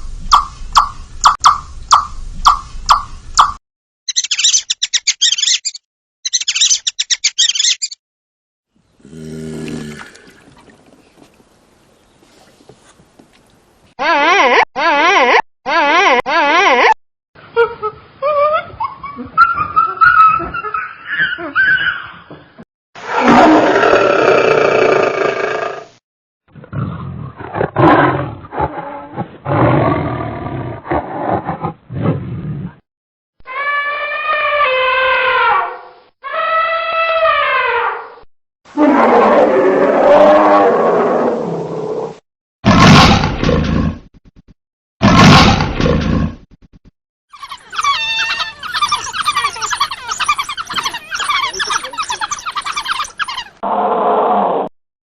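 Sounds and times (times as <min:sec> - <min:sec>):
big cat roaring: 0:09.0 - 0:10.3, 0:23.1 - 0:25.9, 0:38.8 - 0:44.0
fox yipping and whining: 0:18.4 - 0:22.2, 0:47.3 - 0:53.6
pitched animal call: 0:33.4 - 0:38.1, 0:47.3 - 0:54.7.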